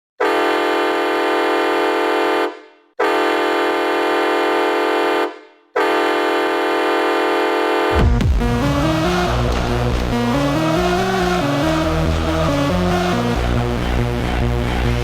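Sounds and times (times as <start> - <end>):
hockey goal horn blasts: 0.2 - 10.0.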